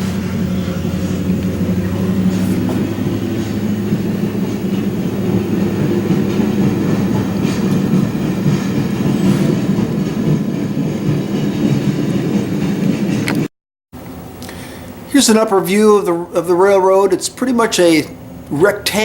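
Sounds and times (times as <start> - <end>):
wheels clicking on track: 0.0 - 13.5.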